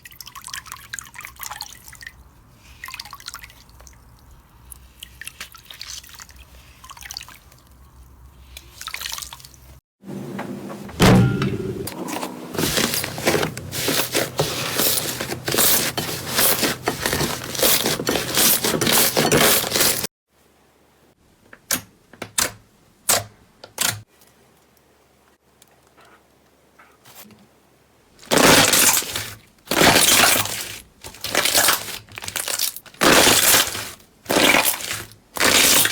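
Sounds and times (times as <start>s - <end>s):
slime squishing and crackling: 28.3s - 35.9s.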